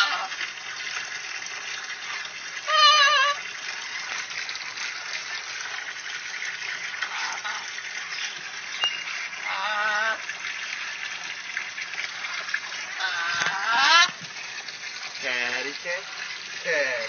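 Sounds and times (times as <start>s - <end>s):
parrot warbling call: 0.0s - 0.3s, 2.6s - 3.4s, 7.1s - 7.7s, 8.8s - 10.3s, 13.0s - 14.2s.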